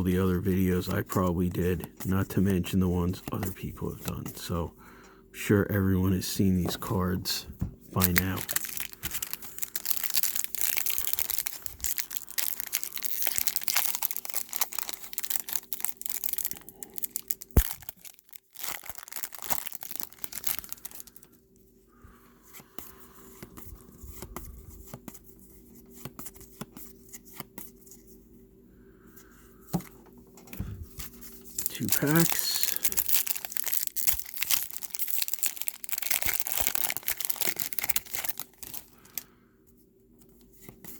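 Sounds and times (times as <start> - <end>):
wrappers tearing and crinkling: 8.0 - 21.3, 31.0 - 39.3.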